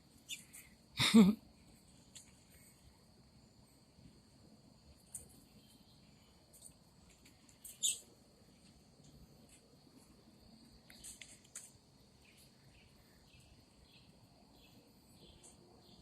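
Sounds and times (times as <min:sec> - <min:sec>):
faint high-pitched hum: 0:00.0 - 0:16.0
bird chirps: 0:00.2 - 0:00.7, 0:07.6 - 0:08.1.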